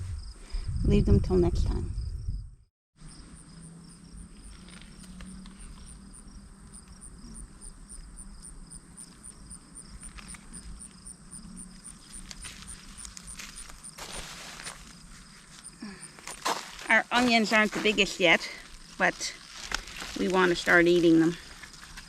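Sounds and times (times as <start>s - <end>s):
crickets chirping: 0.0s - 1.1s, 1.8s - 22.0s
light footsteps or rustles: 12.0s - 22.0s.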